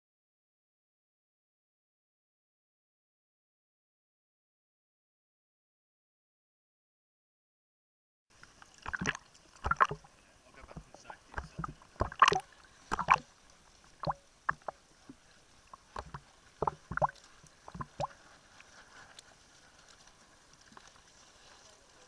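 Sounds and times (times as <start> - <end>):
faint steady hiss: 8.3 - 22.0.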